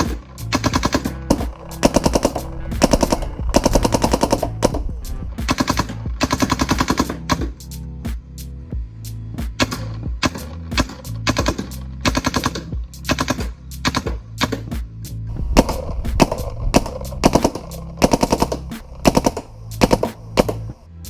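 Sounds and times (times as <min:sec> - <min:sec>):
paintball marker rapid firing: 0:00.0 - 0:03.0, 0:05.5 - 0:07.6, 0:09.6 - 0:14.8, 0:15.6 - 0:20.6
background music with bass: 0:00.0 - 0:21.0.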